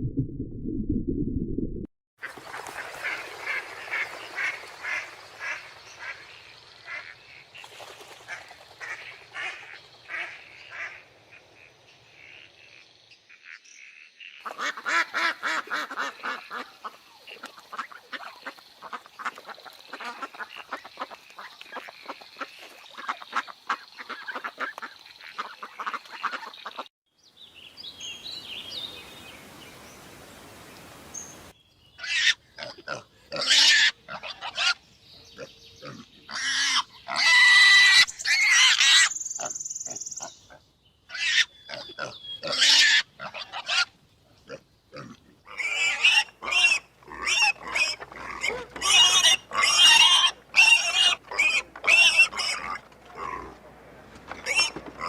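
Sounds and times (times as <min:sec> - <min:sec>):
ducks quacking: 0:02.2 - 0:13.7, 0:14.4 - 0:26.9, 0:44.5 - 0:55.0.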